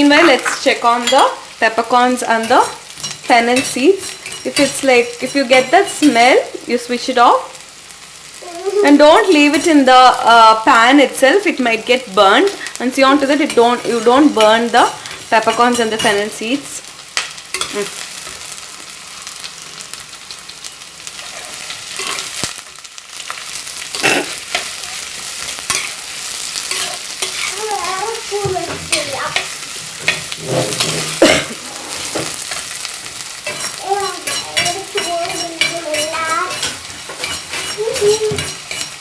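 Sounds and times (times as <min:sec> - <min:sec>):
spatula scraping a pan: 0:00.0 - 0:06.6, 0:12.5 - 0:16.7, 0:21.1 - 0:22.5, 0:23.3 - 0:39.0
onions sizzling in oil: 0:00.0 - 0:39.0.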